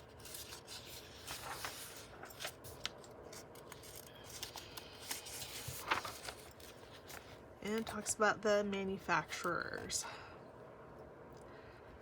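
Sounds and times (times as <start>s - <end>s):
book pages rustling: 0.0s - 8.2s.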